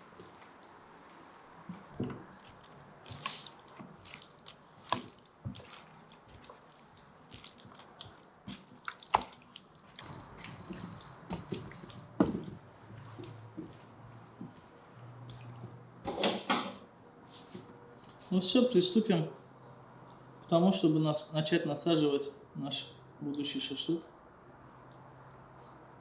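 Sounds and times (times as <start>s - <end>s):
wet squelches of mixing chicken: 0.0s - 16.0s.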